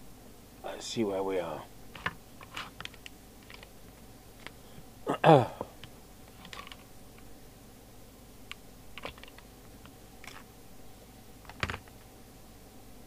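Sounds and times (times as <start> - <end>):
faint steady hum: 0.0 - 13.0
clicks and taps handling equipment: 5.8 - 6.9.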